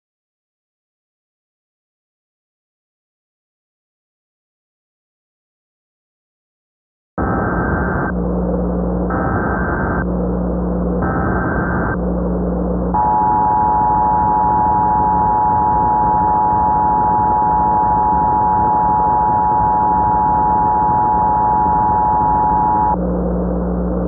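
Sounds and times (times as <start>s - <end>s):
muffled radio broadcast: 7.2s - 24.0s
dual-tone alert signal: 13.0s - 23.0s.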